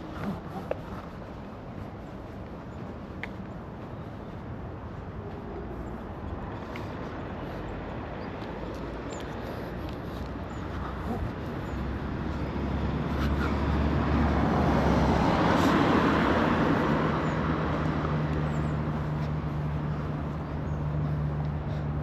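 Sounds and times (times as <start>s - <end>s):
traffic hum: 0.0s - 22.0s
vehicle passing by: 8.6s - 22.0s.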